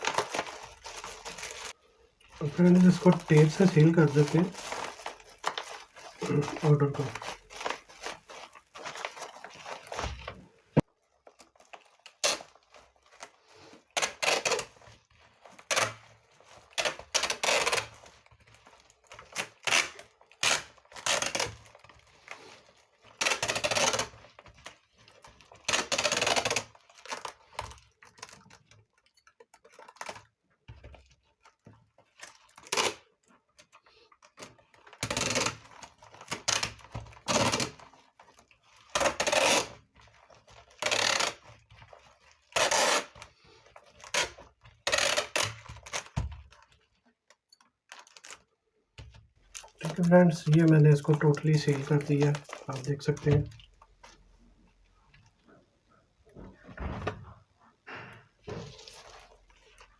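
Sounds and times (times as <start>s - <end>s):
adhesive tape ripping: 0.0s - 1.7s, 2.4s - 10.2s, 11.7s - 13.3s, 14.0s - 16.1s, 16.7s - 24.8s, 25.6s - 27.6s, 32.6s - 33.0s, 34.9s - 39.8s, 40.6s - 46.2s, 49.5s - 53.5s.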